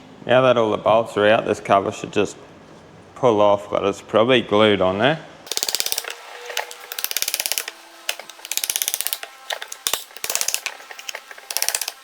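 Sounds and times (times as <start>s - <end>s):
ratchet wrench clicking: 5.5s - 12.0s.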